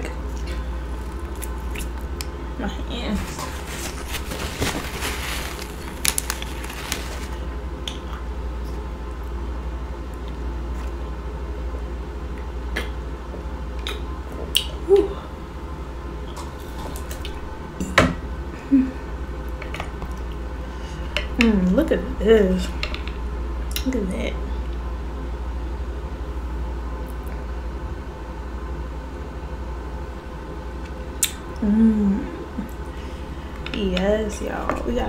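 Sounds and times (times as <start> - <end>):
steady low hum: 0.0 - 35.0
wet squishy chewing: 0.3 - 2.3
handling of buttery seafood: 3.0 - 7.6.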